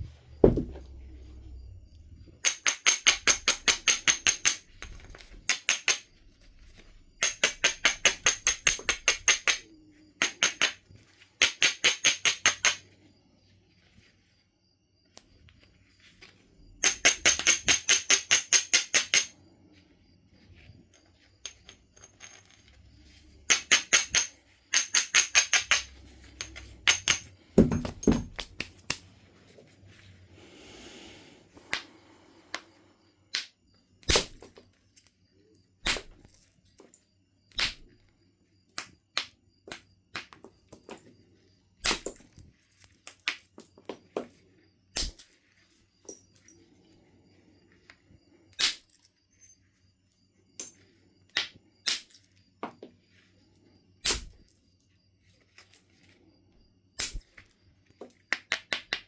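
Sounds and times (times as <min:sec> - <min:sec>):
heavier stone knocks: 0:00.4 - 0:00.9, 0:26.8 - 0:28.6
stone abrading flint edge: 0:02.4 - 0:09.6.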